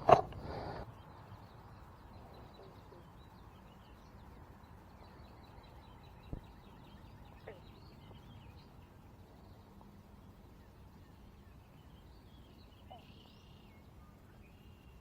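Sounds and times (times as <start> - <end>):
faint bird calls: 0.0 - 15.0.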